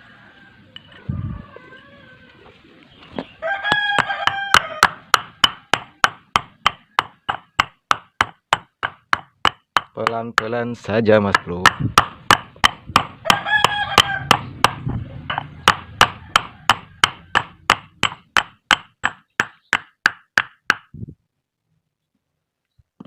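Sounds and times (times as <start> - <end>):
hammer tapping: 3.7 - 10.6, 11.3 - 20.9.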